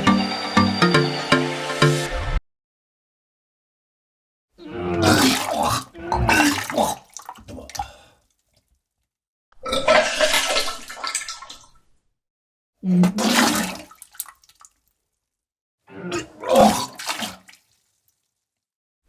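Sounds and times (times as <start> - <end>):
person vomiting: 4.9 - 8.1.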